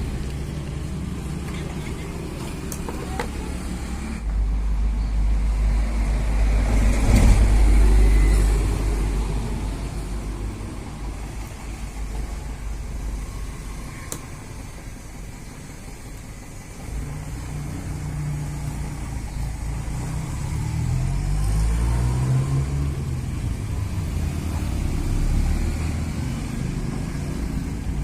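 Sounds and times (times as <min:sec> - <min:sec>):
vehicle engine passing: 0:16.9 - 0:28.0.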